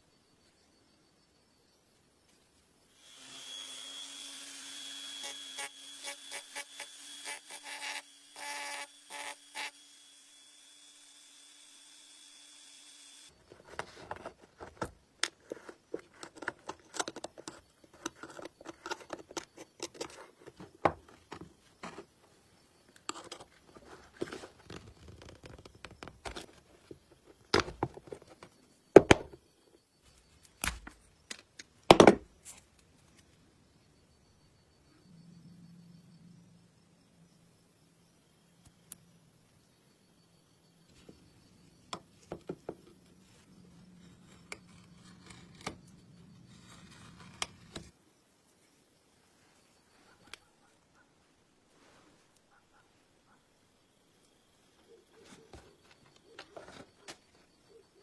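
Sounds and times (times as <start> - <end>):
tools clicking and knocking: 13.7 - 22.0.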